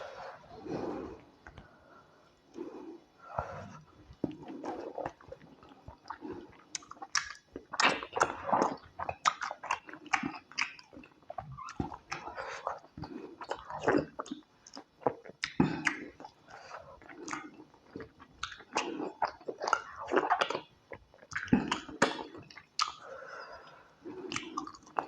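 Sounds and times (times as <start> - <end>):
person chewing food: 2.5 - 23.1, 24.0 - 25.0
mouth clicks and wet smacks: 4.1 - 23.0, 24.3 - 25.0.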